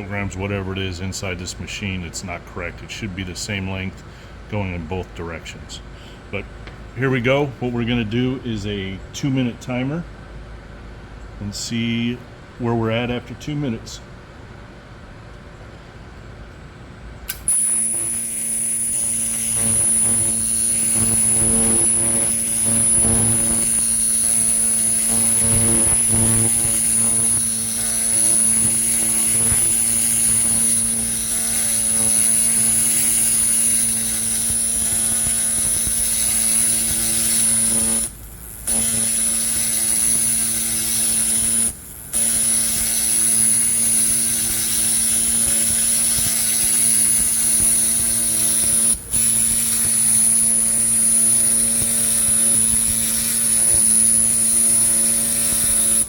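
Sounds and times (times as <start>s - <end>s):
laser cleaner buzzing with high whine: 17.3s - 56.0s.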